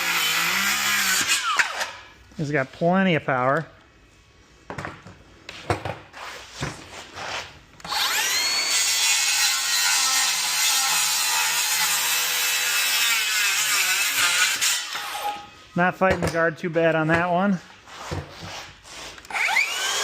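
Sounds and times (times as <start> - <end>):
circular saw cutting wood: 0.0 - 2.0, 7.9 - 15.5, 19.2 - 20.0.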